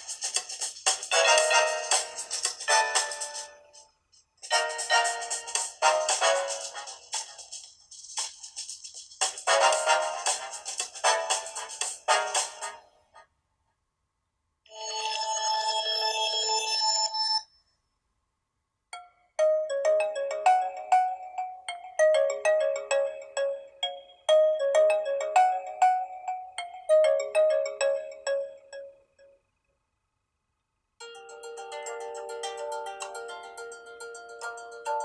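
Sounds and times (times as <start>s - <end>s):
ringtone melody of struck notes: 0.0s - 12.9s, 18.9s - 29.4s, 31.0s - 35.0s
held ringtone chord: 4.5s - 7.0s, 19.0s - 29.3s, 31.0s - 35.0s.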